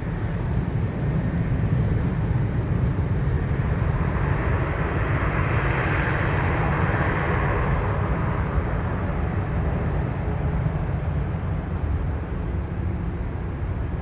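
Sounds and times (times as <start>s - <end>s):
turboprop engines roaring: 0.0s - 14.0s.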